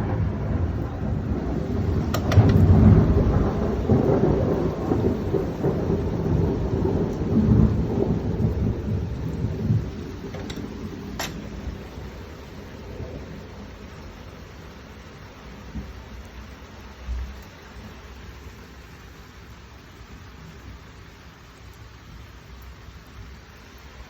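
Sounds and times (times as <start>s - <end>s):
thunder rumbling: 0.0s - 16.1s
heavy rain: 0.0s - 24.0s
sharp clicks: 2.1s - 2.7s.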